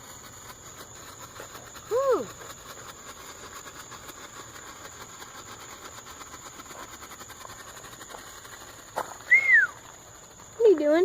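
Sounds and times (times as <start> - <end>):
firework hissing and crackling: 0.0 - 11.0.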